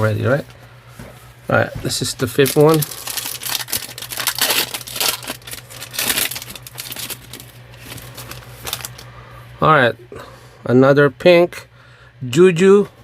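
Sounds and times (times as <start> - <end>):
foil wrapper tearing and crinkling: 2.2 - 9.1.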